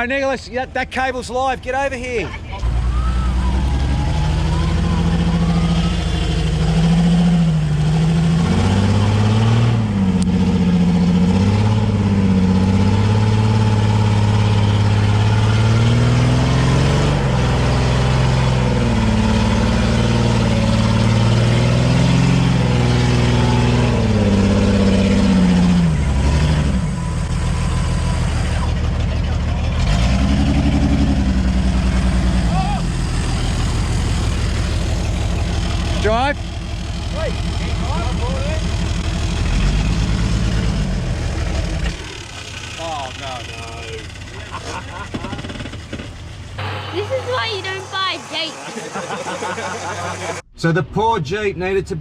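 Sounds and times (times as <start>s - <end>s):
engine revving under load: 2.6s - 50.5s.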